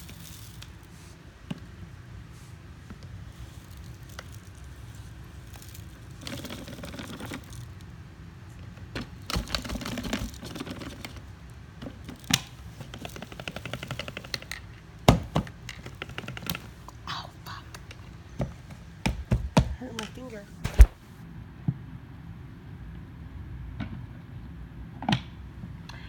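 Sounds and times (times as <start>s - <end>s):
hard objects clicking and rattling: 3.0s - 7.9s, 8.6s - 16.8s.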